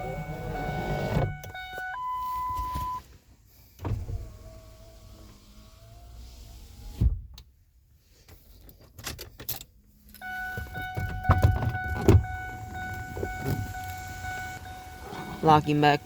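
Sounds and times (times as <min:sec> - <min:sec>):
car warning tone: 0:00.0 - 0:03.0, 0:10.2 - 0:16.0.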